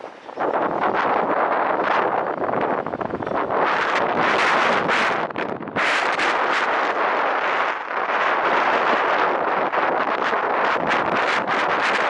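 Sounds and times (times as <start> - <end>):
wind and rain on microphone: 0.0 - 12.0.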